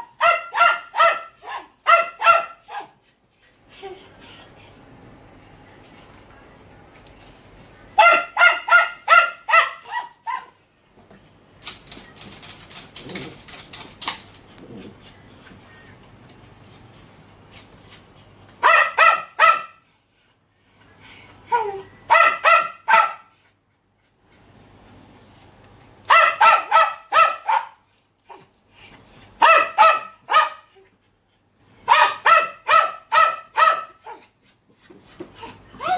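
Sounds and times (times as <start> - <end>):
dog barking angrily: 0.0 - 3.0, 8.0 - 10.6, 18.6 - 19.8, 22.1 - 23.4, 26.0 - 27.8, 29.4 - 30.7, 31.8 - 34.3.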